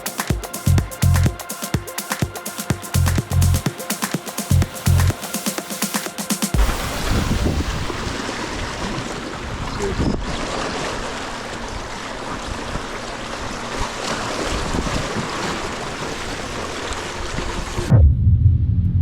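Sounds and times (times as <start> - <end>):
background music with low notes: 0.0 - 7.6
ocean waves washing in: 0.0 - 18.4
wind on microphone: 6.6 - 10.8.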